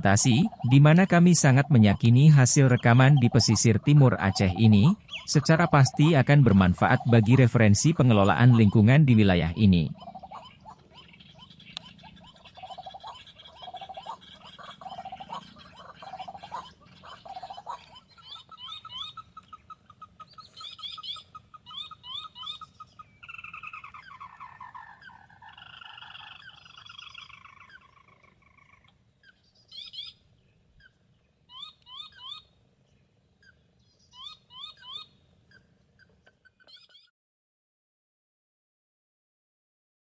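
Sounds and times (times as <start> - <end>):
wild birds calling and singing: 0.0 - 37.1.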